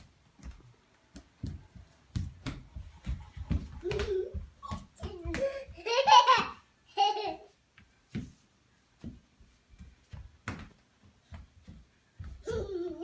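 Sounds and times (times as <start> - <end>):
young child babbling and laughing: 3.8 - 7.5, 12.4 - 13.0.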